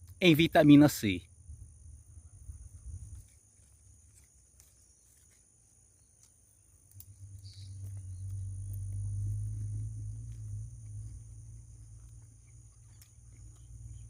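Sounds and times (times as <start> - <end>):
low rumble: 7.1 - 12.7.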